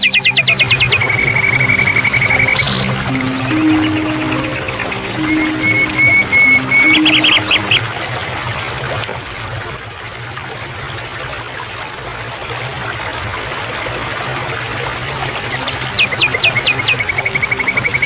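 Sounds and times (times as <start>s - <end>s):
water flowing steadily: 0.4s - 18.0s
bird chirps: 0.5s - 7.8s.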